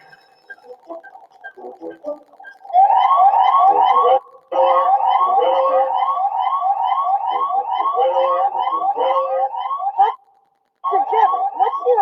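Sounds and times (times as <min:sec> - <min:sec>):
electronic alarm siren whooping: 0:02.7 - 0:10.2.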